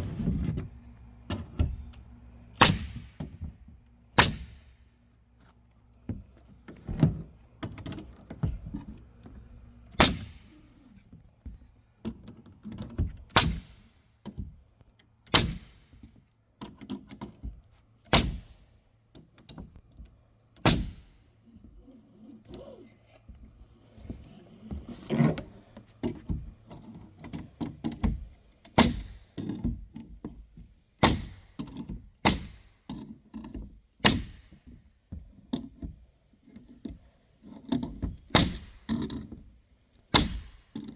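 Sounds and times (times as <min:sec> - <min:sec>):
nailer striking nails into wood: 0:02.6 - 0:03.5, 0:04.2 - 0:04.7, 0:10.0 - 0:10.6, 0:13.3 - 0:13.9, 0:15.3 - 0:16.1, 0:18.1 - 0:18.6, 0:20.6 - 0:21.2, 0:27.8 - 0:29.6, 0:31.0 - 0:34.8, 0:37.8 - 0:39.3, 0:40.1 - 0:40.9.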